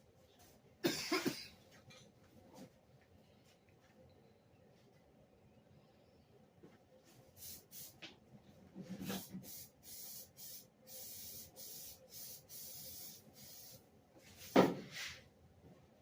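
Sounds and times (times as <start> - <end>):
aerosol spray can hissing: 7.4 - 8.0, 9.2 - 13.8.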